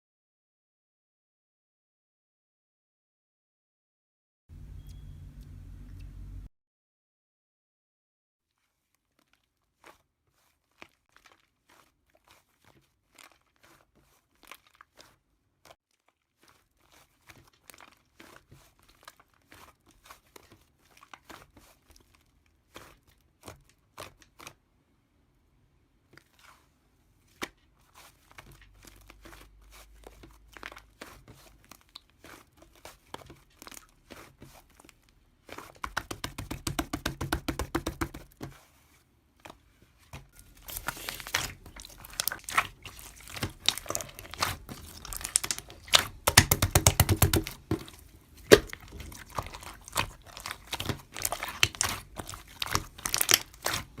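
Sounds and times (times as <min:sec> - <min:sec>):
slime squishing with crackling pops: 0:09.1 - 0:24.6, 0:40.2 - 0:54.0.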